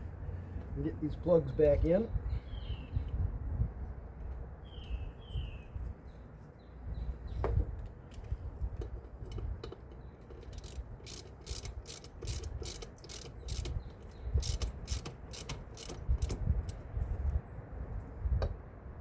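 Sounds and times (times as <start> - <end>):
ratchet wrench clicking: 8.1 - 16.8.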